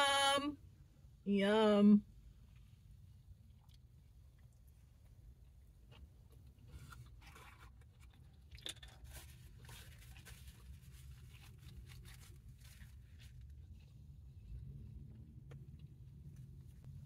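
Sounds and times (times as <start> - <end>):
low steady hum: 0.0 - 17.0
soft eating crunches: 2.4 - 17.0
wrapper rustling: 8.7 - 13.6.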